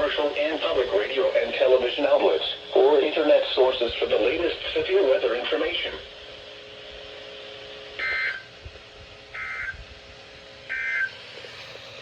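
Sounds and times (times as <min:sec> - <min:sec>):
digital data tone bursts: 0:08.0 - 0:08.5, 0:09.4 - 0:09.8, 0:10.7 - 0:11.2.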